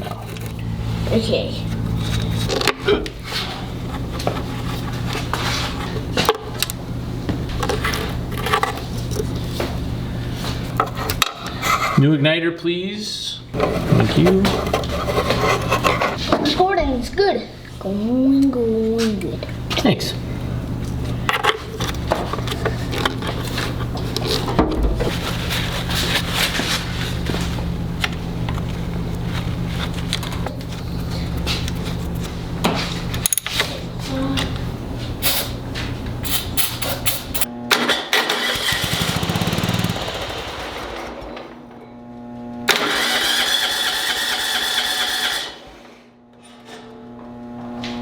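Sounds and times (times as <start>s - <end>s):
steady low hum: 0.0s - 37.7s.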